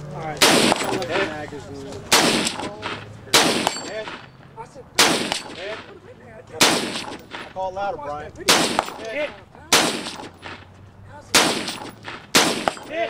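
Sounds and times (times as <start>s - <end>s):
gunshots: 0.4s - 1.4s, 2.1s - 4.3s, 5.0s - 5.9s, 6.6s - 7.6s, 8.4s - 10.7s, 11.3s - 13.0s.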